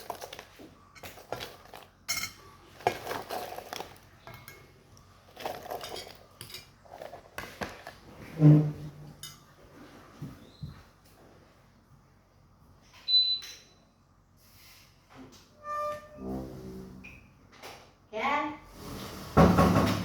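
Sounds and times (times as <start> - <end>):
cutlery clinking against dish: 1.0 - 4.7.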